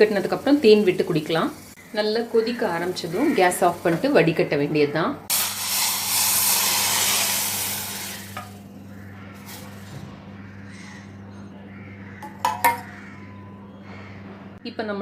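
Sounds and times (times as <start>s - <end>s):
liquid boiling hard in pan: 5.3s - 8.6s.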